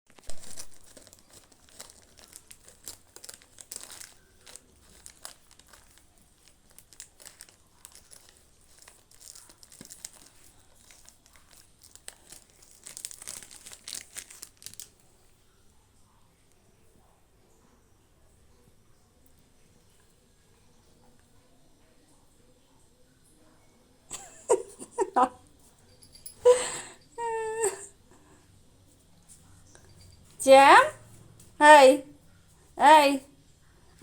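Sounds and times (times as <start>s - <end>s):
plastic wrapper crinkling: 0.1s - 15.1s.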